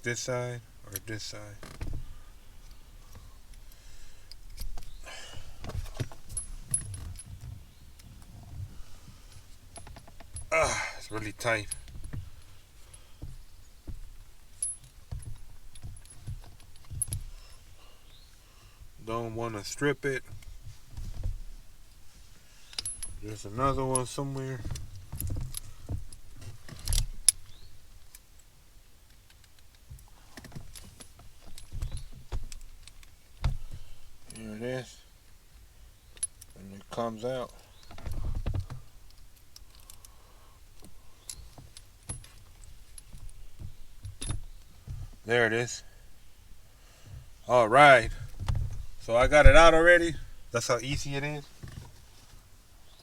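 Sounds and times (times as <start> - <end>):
light metallic clinks: 2.6 - 8.1, 9.1 - 18.4, 22.6 - 28.5, 29.1 - 35.1, 36.0 - 45.0
small clicks and knocks: 11.5 - 18.4, 22.6 - 34.5, 35.3 - 45.3
screws and hand tools rattling: 22.6 - 27.6, 47.7 - 51.5.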